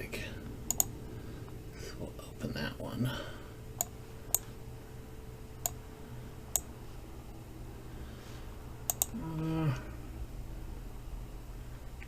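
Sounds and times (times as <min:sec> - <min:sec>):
computer mouse clicking: 0:00.7 - 0:00.9, 0:03.8 - 0:04.5, 0:05.6 - 0:05.8, 0:08.9 - 0:09.2.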